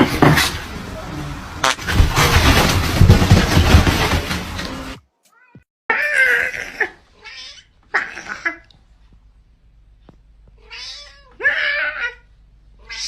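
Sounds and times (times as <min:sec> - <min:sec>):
cat meowing: 0:05.3 - 0:08.6, 0:10.6 - 0:13.0.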